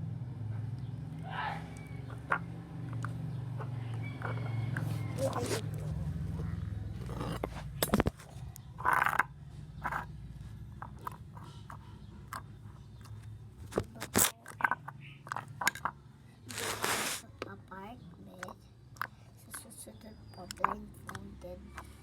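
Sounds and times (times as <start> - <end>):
objects clicking and scraping: 1.8 - 5.9, 7.0 - 10.1, 10.8 - 17.2.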